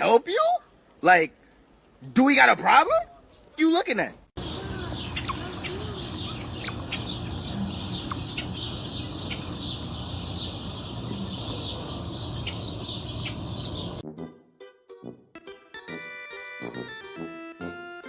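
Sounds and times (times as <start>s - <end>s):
birds chirping: 2.4s - 14.0s.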